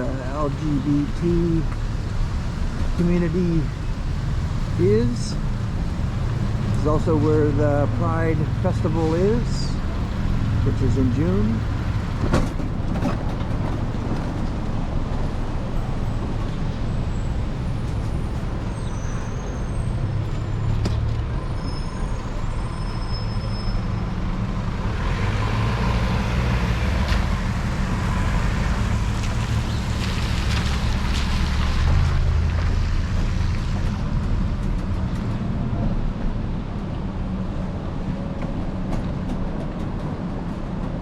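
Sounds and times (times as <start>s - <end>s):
traffic rumble: 0.0s - 41.0s
tyres hissing on wet road: 21.6s - 34.2s.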